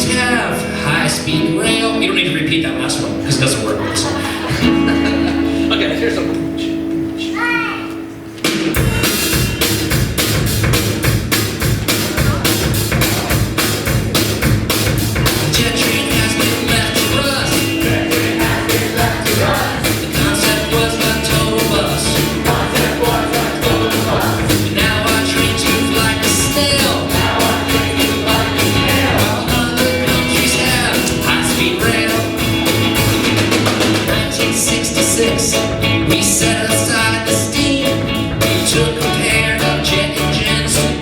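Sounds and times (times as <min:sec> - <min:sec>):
rock band playing live: 0:00.0 - 0:41.0
drums driving beat: 0:08.4 - 0:41.0.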